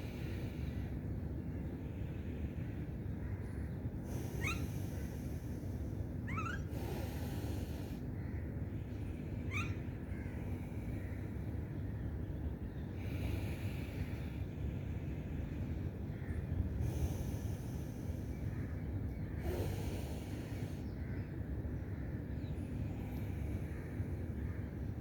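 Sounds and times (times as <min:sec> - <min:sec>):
slow nasal breathing: 0:00.0 - 0:01.0, 0:04.0 - 0:08.2, 0:12.9 - 0:15.8, 0:16.7 - 0:18.5, 0:19.3 - 0:21.0
steady low hum: 0:00.0 - 0:25.0.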